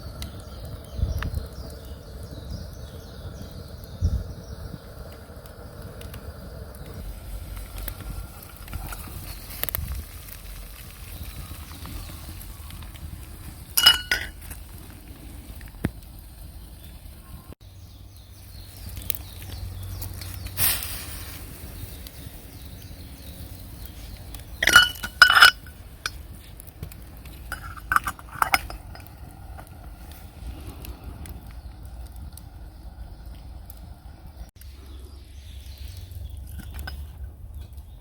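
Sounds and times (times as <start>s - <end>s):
cookware and utensils clinking: 13.8s - 14.6s, 24.6s - 26.2s, 27.5s - 29.1s.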